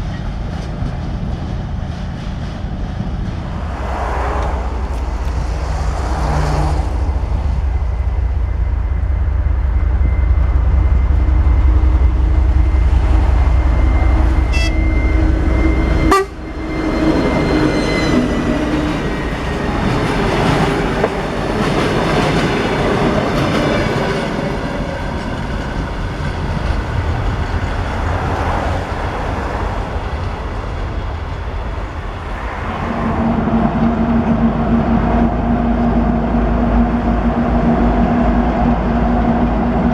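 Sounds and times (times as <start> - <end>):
diesel engine rumble: 2.5 - 16.6
train horn: 13.6 - 18.2
train wheel clatter: 16.1 - 32.8.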